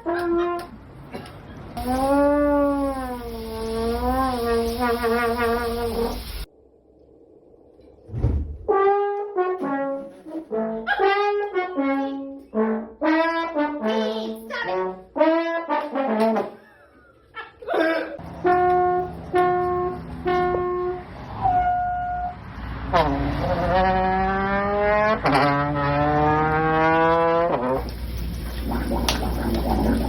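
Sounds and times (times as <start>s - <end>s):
brass instrument short notes: 18.4s - 27.7s.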